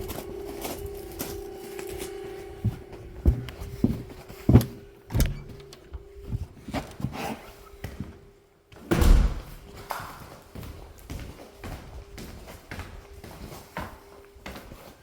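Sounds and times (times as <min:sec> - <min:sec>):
turbine humming: 0:00.0 - 0:06.7.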